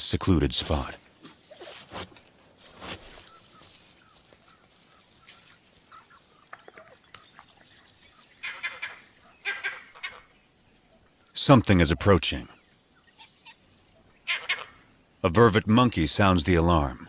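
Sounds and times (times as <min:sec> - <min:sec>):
faint bush ambience: 0:00.0 - 0:17.0
small ticks: 0:01.2 - 0:10.2
harsh animal calls: 0:02.8 - 0:11.1, 0:13.0 - 0:15.0.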